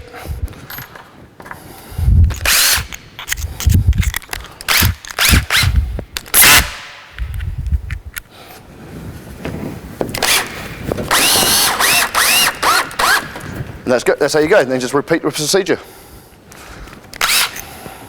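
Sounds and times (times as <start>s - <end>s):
power drill driving screw: 2.4s - 2.9s, 4.7s - 5.8s, 10.2s - 10.5s, 11.1s - 13.5s, 17.2s - 17.7s.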